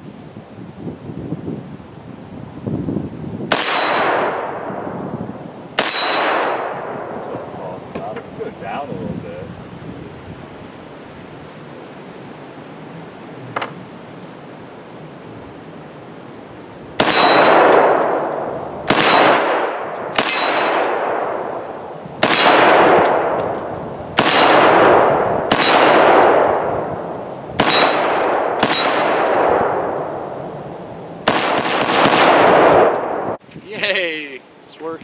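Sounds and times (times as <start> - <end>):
rifle shots with rolling echo: 3.5 - 7.8, 17.0 - 33.4.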